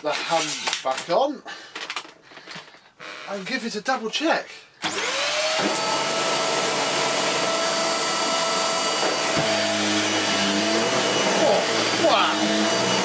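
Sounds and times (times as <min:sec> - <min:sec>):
vacuum cleaner motor whine: 0:04.8 - 0:13.0.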